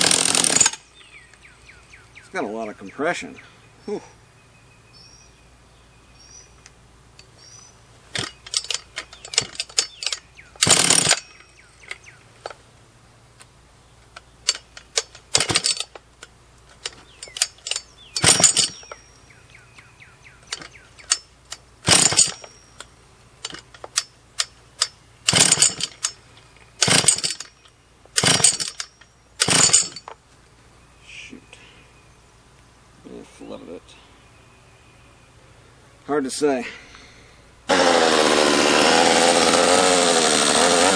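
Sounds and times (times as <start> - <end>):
chainsaw recoil starter pulls: 0.0 - 0.8, 8.1 - 12.6, 14.1 - 19.0, 20.4 - 30.2, 37.7 - 40.9
starter clicks: 8.1 - 12.6, 13.4 - 19.0, 19.8 - 30.2.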